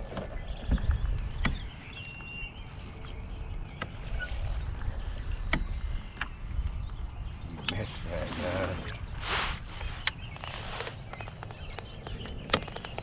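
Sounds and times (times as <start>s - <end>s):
low rumble: 0.0s - 10.8s
faint bird chirps: 0.0s - 13.0s
fishing gear clicks and knocks: 10.8s - 13.0s.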